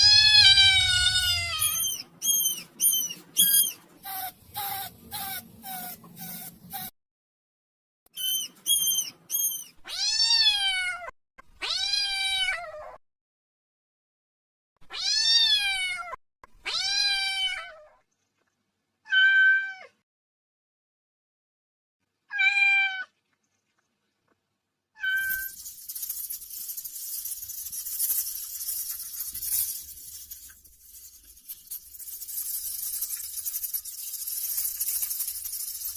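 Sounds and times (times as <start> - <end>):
kitten meowing: 0.0 - 6.9, 25.0 - 25.6.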